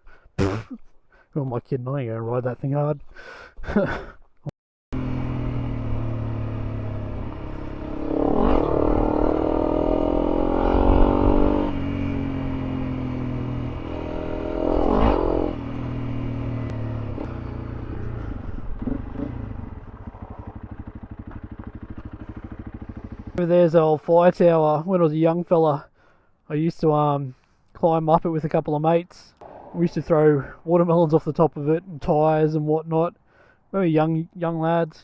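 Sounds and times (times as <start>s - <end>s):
motorcycle engine revving: 4.9s - 23.4s.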